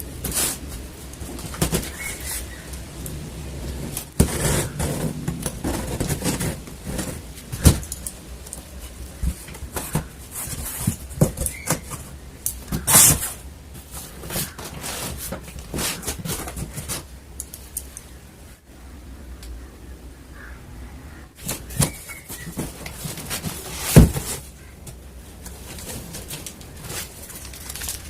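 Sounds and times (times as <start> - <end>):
rustling scrape: 0.2 - 2.7, 3.6 - 17.1, 21.4 - 28.0
packaging rustling: 25.3 - 28.0.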